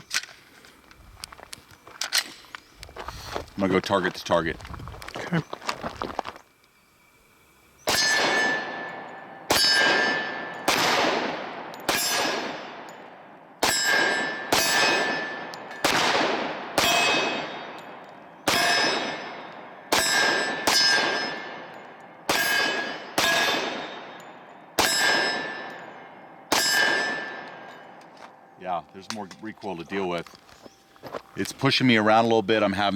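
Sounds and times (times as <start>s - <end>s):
steel target plate ringing: 7.8s - 30.2s
pistol shots: 7.9s - 28.0s.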